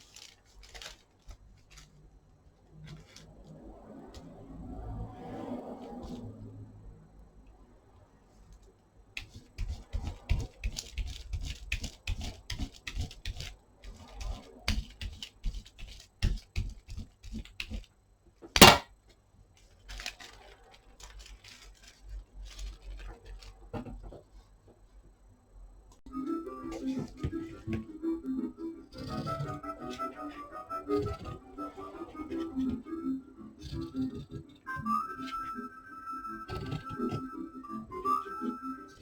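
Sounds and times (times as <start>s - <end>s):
small clicks and rustles: 0.0s - 4.2s, 19.0s - 24.9s.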